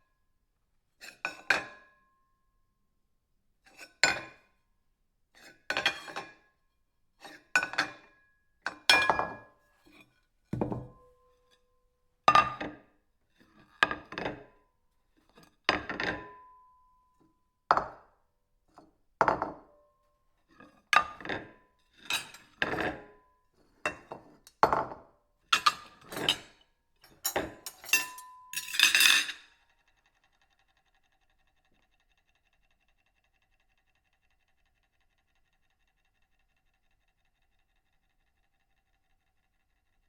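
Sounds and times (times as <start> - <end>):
ceramic plates clinking: 27.1 - 29.4.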